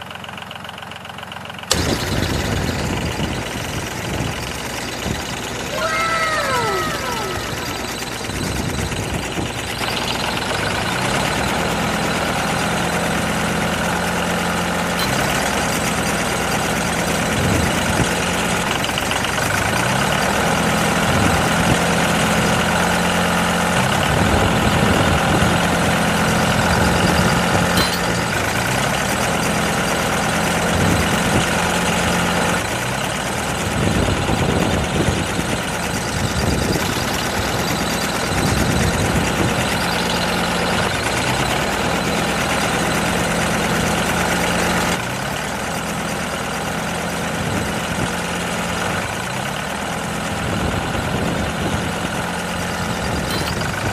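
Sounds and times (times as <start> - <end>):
motor humming: 5.7 - 10.2.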